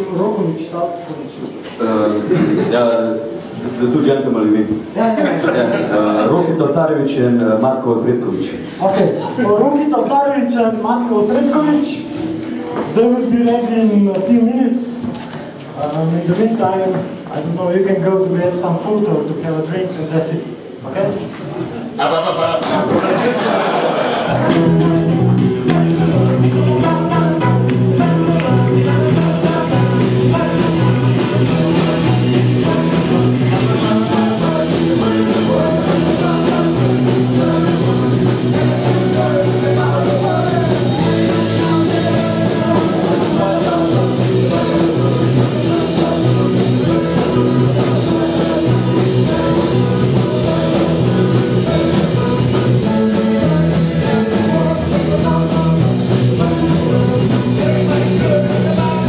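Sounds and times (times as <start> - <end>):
guitar: 24.0 - 59.0
rock music: 24.3 - 59.0
steady drum beat: 24.3 - 59.0
person singing: 24.4 - 59.0.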